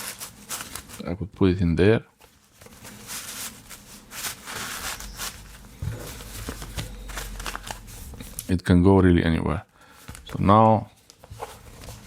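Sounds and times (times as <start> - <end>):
wallet rustling: 2.3 - 8.5, 10.2 - 12.0.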